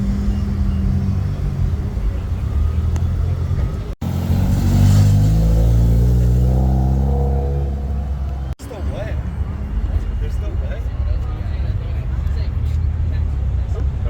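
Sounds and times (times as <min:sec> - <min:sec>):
car engine running: 0:00.0 - 0:08.6
engine revving up: 0:00.0 - 0:08.6.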